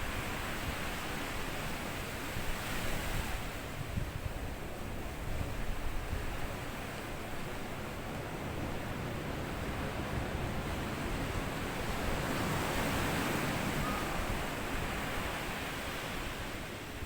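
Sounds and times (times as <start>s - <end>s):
sea waves washing onto sand: 7.8s - 17.0s.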